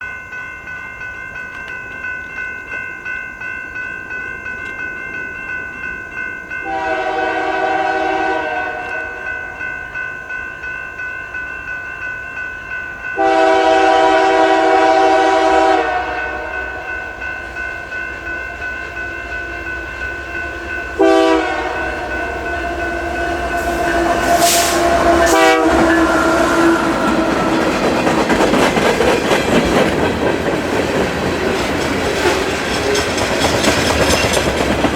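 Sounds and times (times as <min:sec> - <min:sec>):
crossing bell ringing: 0:00.0 - 0:34.9
locomotive air horn: 0:06.6 - 0:09.3, 0:13.2 - 0:16.8, 0:21.0 - 0:27.8
train wheels clacking over rails: 0:17.6 - 0:34.9.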